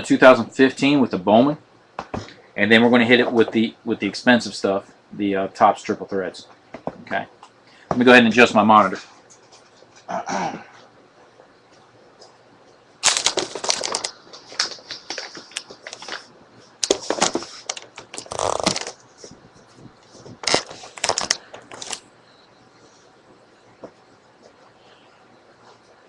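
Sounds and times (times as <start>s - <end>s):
handling clicks and crinkling: 13.0s - 19.1s, 20.0s - 22.1s.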